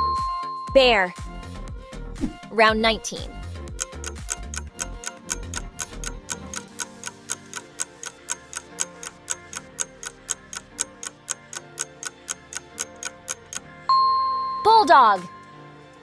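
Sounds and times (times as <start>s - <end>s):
soft background music: 0.0s - 16.0s
countdown timer ticking: 2.8s - 15.3s.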